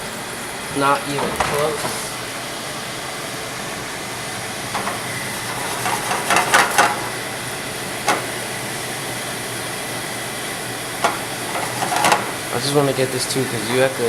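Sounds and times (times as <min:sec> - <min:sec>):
sauce boiling in a pan: 0:00.1 - 0:14.0
cookware clattering: 0:01.1 - 0:02.1, 0:04.8 - 0:07.2, 0:11.0 - 0:12.5.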